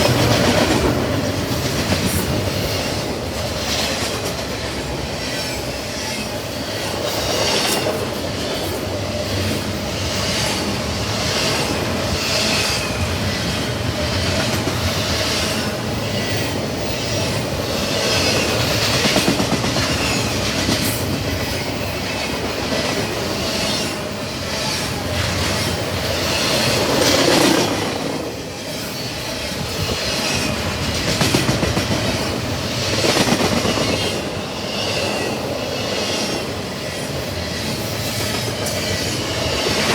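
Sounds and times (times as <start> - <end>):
clickety-clack over rail joints: 0.0 - 39.9
train wheels rumbling: 0.0 - 39.9
wheels squealing on rails: 0.0 - 39.9.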